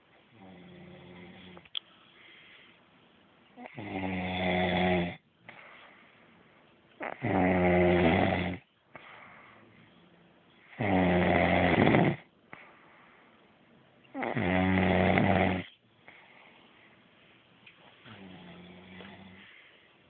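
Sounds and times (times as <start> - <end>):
soft breathing: 0.6 - 3.0, 5.4 - 6.8, 8.8 - 10.8, 12.4 - 13.6, 15.7 - 20.0
person snoring: 3.6 - 5.2, 7.0 - 8.6, 10.7 - 12.3, 14.2 - 15.7, 18.1 - 19.6.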